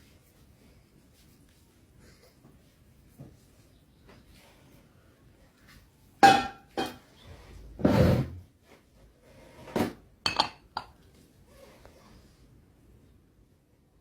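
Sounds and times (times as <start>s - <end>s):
dishes and utensils clinking: 6.2s - 7.1s, 10.2s - 11.0s
rough scrape: 7.8s - 8.4s.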